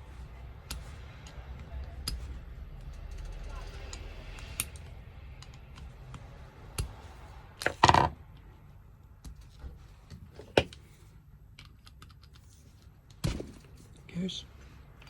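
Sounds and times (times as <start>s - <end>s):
small metal clicks and taps: 0.6s - 8.5s.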